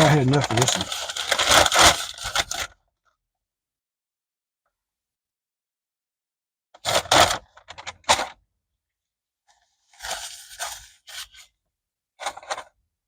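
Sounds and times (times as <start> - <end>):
paper wrapper crinkling: 0.0 - 2.7, 10.0 - 11.5.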